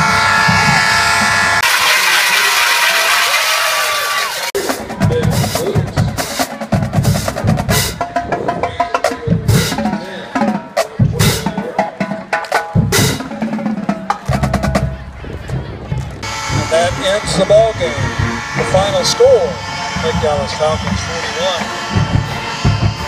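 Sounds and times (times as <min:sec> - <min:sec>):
bass drums: 0:00.0 - 0:01.8, 0:04.4 - 0:23.0
snare drums: 0:00.5 - 0:15.0.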